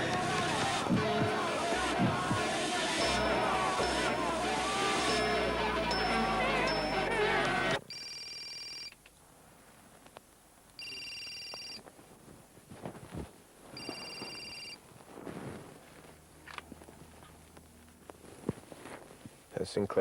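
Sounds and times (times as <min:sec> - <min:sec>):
telephone electronic ring: 0:05.0 - 0:09.0, 0:10.8 - 0:11.8, 0:13.8 - 0:14.8
faint knocks and shuffles: 0:11.8 - 0:19.6.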